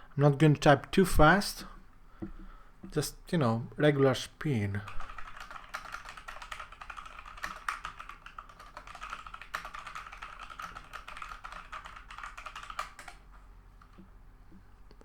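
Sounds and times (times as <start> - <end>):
mechanical keyboard typing: 4.9 - 14.0.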